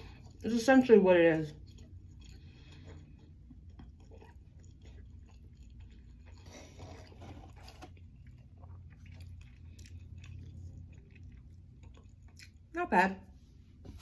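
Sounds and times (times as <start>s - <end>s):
close-up chewing: 0.0s - 12.7s.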